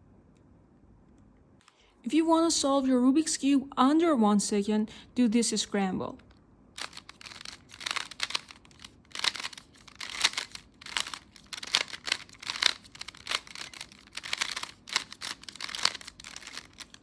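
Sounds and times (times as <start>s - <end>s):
plastic puzzle cube clacking: 6.8s - 17.0s.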